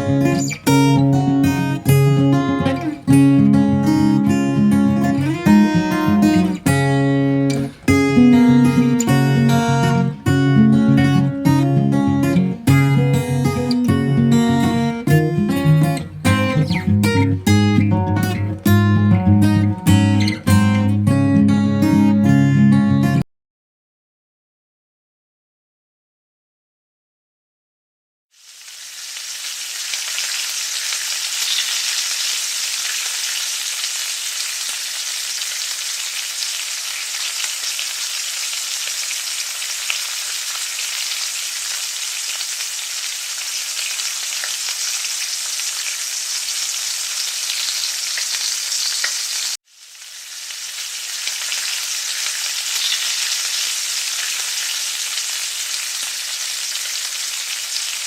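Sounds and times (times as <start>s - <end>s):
patties sizzling in frying oil: 28.3s - 58.0s.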